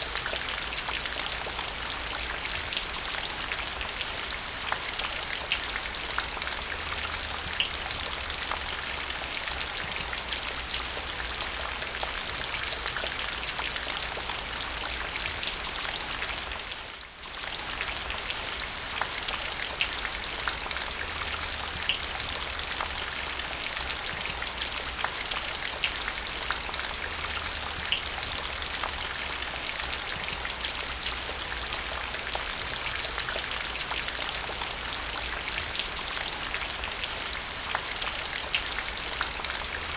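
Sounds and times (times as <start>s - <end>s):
rain falling into a puddle: 0.0s - 39.9s.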